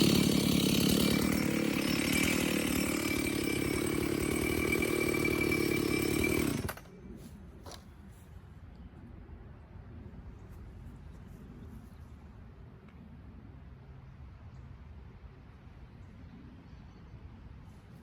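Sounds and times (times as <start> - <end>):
chainsaw running: 0.0 - 6.9.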